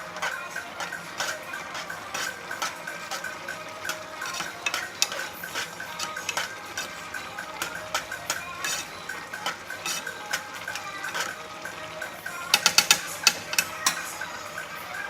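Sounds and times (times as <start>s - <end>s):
utensil clinking against pot: 0.8s - 14.5s
utensil scraping in a pot: 1.2s - 14.5s.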